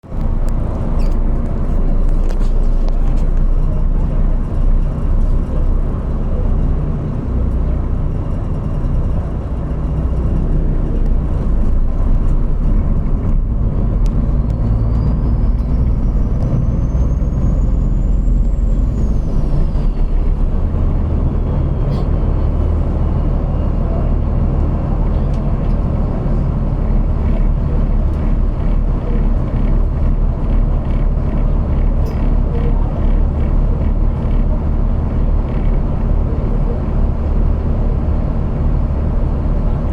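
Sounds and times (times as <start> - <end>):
vehicle engine and road rumble: 0.0 - 39.9.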